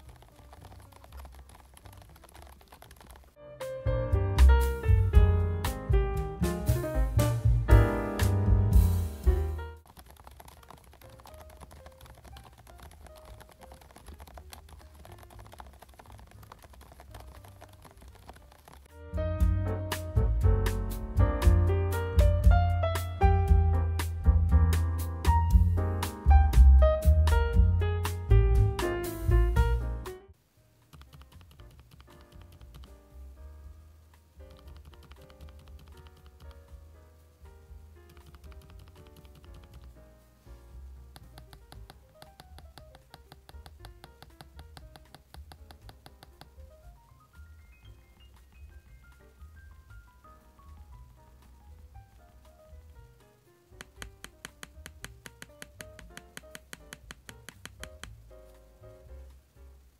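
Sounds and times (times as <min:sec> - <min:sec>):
soft keyboard typing: 0:00.0 - 0:03.4, 0:09.8 - 0:18.9, 0:30.9 - 0:33.1, 0:34.4 - 0:36.8, 0:38.0 - 0:40.1, 0:41.1 - 0:58.7
music: 0:00.0 - 0:09.9, 0:10.6 - 0:59.9.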